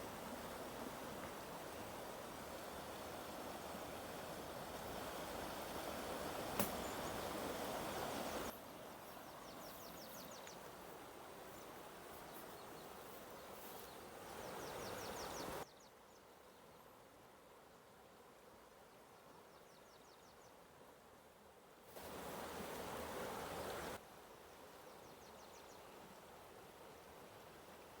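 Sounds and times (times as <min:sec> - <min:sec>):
outdoor noise haze: 0:00.0 - 0:19.8, 0:20.4 - 0:28.0
sharp click: 0:06.6 - 0:06.8.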